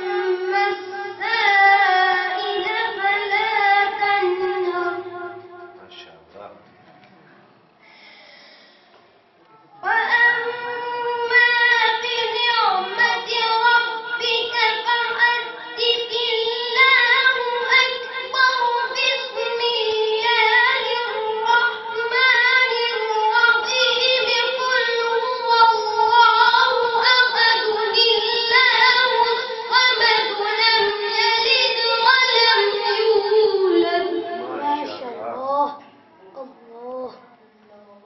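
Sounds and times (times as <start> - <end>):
boy chanting melodically: 0.0 - 6.0, 9.7 - 38.0.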